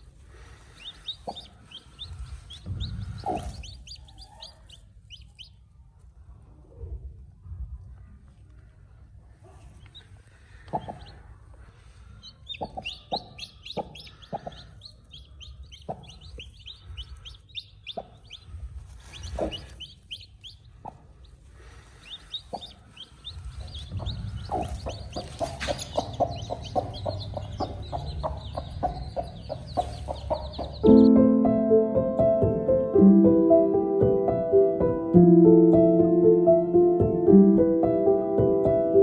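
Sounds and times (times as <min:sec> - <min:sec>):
hen clucking: 0:00.0 - 0:05.6, 0:09.8 - 0:31.1
chicks peeping: 0:00.0 - 0:06.1, 0:09.4 - 0:31.3
low rumble: 0:22.9 - 0:31.4.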